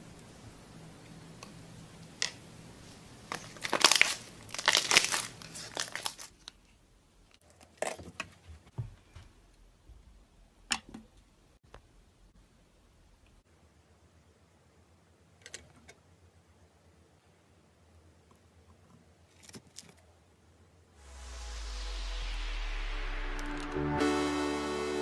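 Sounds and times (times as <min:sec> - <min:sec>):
slime crackling and popping: 0:03.4 - 0:06.3.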